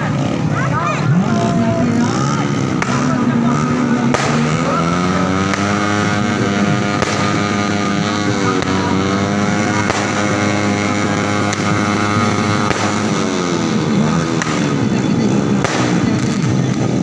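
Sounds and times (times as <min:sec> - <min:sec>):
engine-like drone: 0:00.0 - 0:17.0
fireworks bangs: 0:04.0 - 0:17.0.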